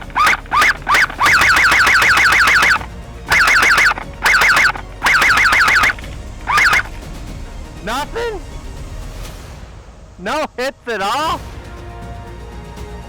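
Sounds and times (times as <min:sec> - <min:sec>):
airsoft rifle shots: 0:00.0 - 0:06.9.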